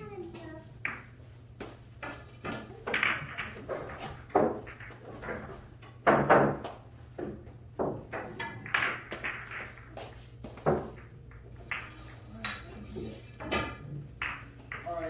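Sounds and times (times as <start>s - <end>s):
steady low hum: 7.3s - 15.0s.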